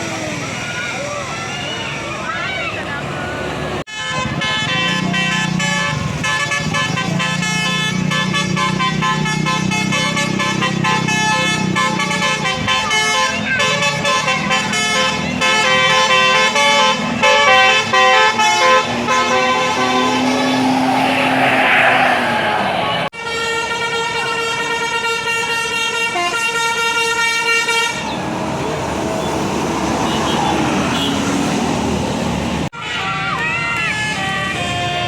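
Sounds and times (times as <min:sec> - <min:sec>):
musical bus air horn: 0:03.9 - 0:28.1, 0:32.6 - 0:35.0.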